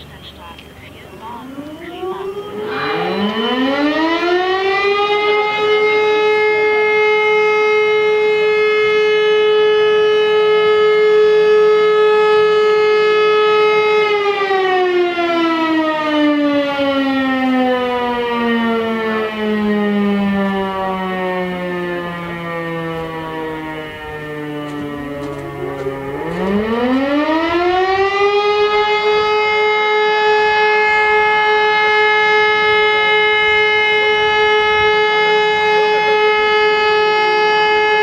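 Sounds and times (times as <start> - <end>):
siren wailing: 0.0 - 38.0.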